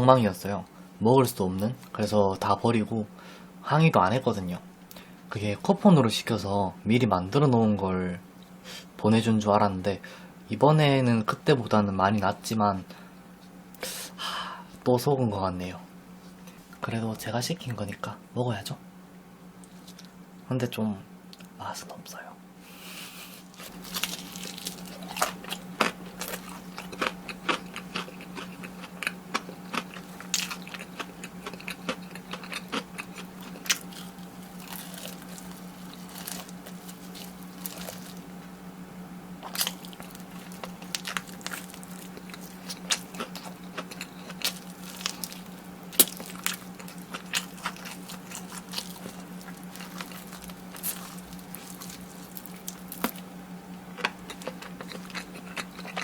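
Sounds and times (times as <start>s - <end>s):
steady low hum: 0.0s - 56.0s
chewing crunchy food: 23.2s - 38.5s, 39.4s - 56.0s.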